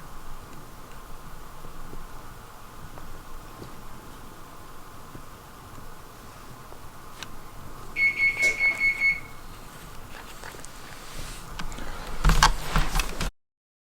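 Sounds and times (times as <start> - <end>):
high electronic beeps: 8.0 - 9.4
knocking and rustling: 8.4 - 13.3.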